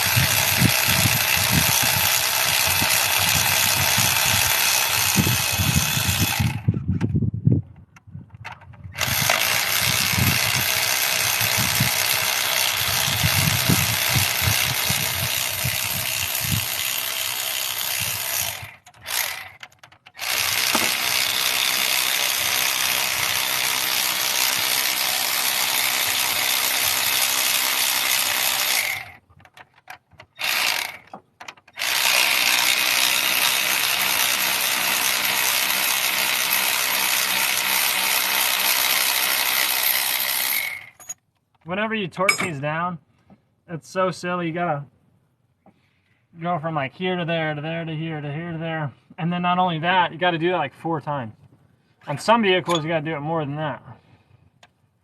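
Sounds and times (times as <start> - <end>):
ratchet wrench ratcheting: 18.0 - 23.6.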